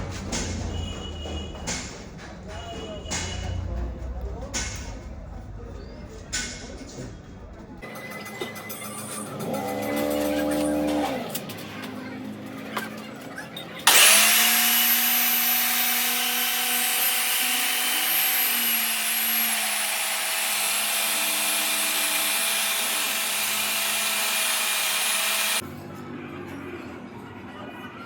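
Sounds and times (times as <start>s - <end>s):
grinding machine hiss and whine: 13.9s - 25.6s.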